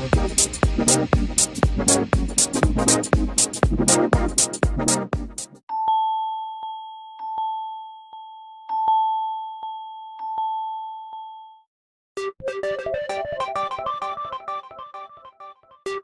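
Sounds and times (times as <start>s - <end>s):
electronic dance-beat ringtone: 0.0s - 5.5s
keyboard melody ringtone: 5.7s - 16.0s.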